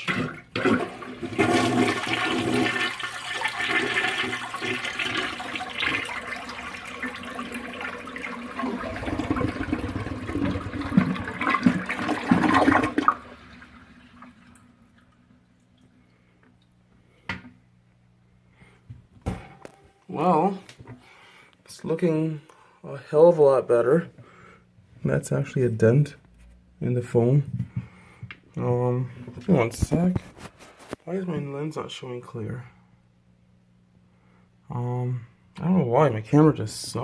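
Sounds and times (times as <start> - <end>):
toilet flushing: 0.0 - 15.8
tank refilling hum: 0.0 - 17.5.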